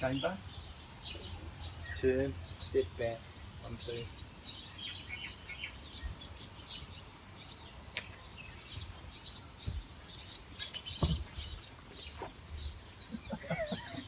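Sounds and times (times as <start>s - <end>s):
small birds chirping: 0.0s - 14.0s
dull low thumps: 9.6s - 10.0s, 10.9s - 11.7s.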